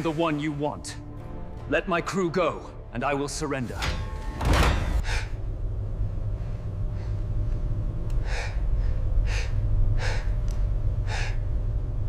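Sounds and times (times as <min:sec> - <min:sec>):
steady low rumble: 0:05.0 - 0:12.0.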